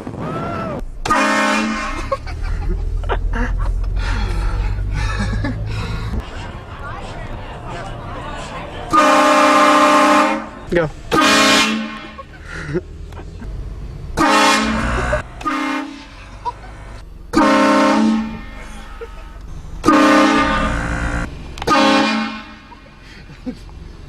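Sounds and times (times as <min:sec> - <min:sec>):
train horn blasts: 0:01.0 - 0:02.1, 0:08.9 - 0:12.2, 0:14.2 - 0:16.3, 0:17.3 - 0:18.8, 0:19.8 - 0:22.7.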